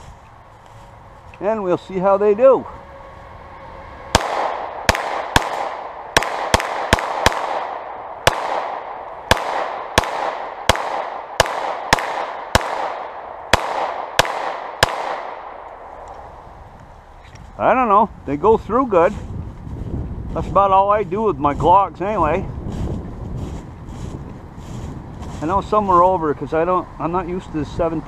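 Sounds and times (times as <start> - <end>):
pistol shots with echo: 4.1 - 15.7.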